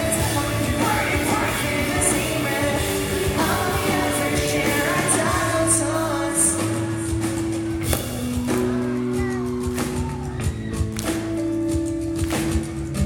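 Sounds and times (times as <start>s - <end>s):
person singing: 0.0s - 10.6s
live pop-punk band: 0.0s - 13.0s.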